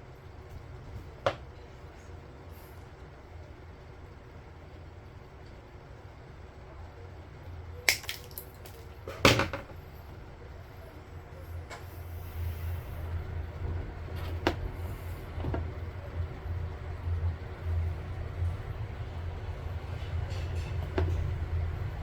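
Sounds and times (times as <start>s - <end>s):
steady low rumble: 9.8s - 22.0s.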